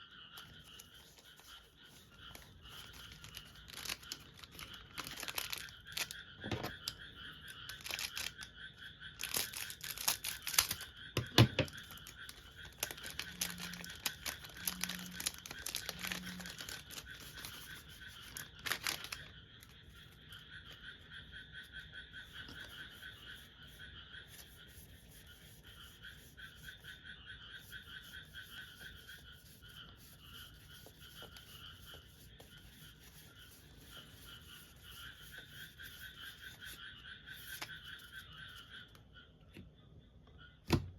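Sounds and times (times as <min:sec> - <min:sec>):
frogs trilling: 0:00.0 - 0:40.9
foil wrapper crinkling and tearing: 0:02.3 - 0:06.1, 0:07.7 - 0:08.4, 0:09.2 - 0:10.8, 0:11.8 - 0:17.5, 0:18.3 - 0:19.2.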